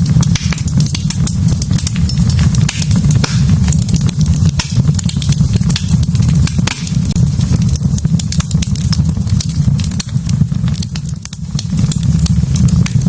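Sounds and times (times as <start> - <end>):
low fire rumble: 0.0 - 13.0
wood fire crackling and popping: 0.0 - 13.0.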